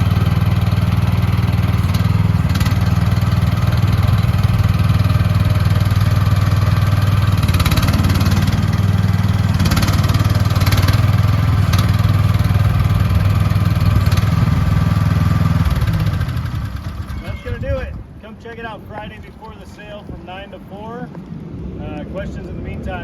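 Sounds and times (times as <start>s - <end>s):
mini excavator engine running: 0.0s - 18.2s.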